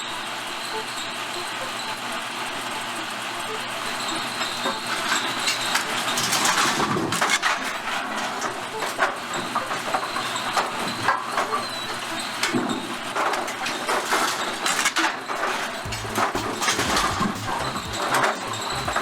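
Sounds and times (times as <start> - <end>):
machine clanks and knocks: 12.4 - 19.0
pinsetter mechanical rumble: 15.4 - 19.0.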